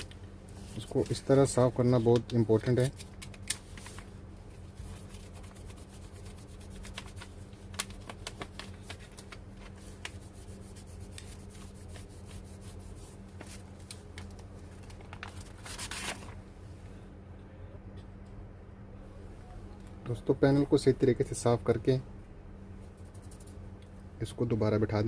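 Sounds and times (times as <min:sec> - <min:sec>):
small scratches and clicks: 0:22.9 - 0:23.6.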